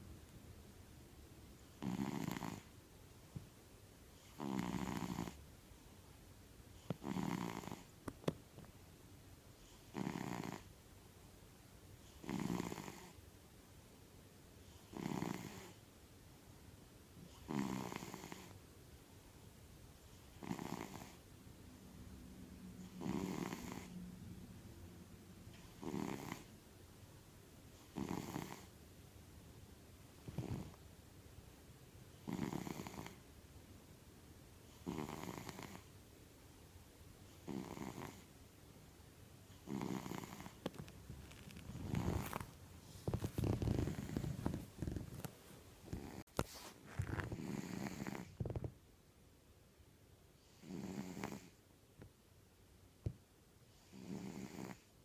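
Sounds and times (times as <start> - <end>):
cat snoring: 1.7 - 2.7, 4.2 - 5.4, 6.8 - 7.9, 9.6 - 10.7, 12.0 - 13.2, 14.7 - 15.8, 17.2 - 18.6, 20.1 - 21.2, 22.5 - 24.2, 25.5 - 26.5, 27.8 - 28.7, 30.2 - 30.8, 32.2 - 33.2, 34.6 - 35.9, 37.3 - 38.3, 39.5 - 40.8, 41.4 - 48.7, 50.4 - 51.6, 53.7 - 54.9.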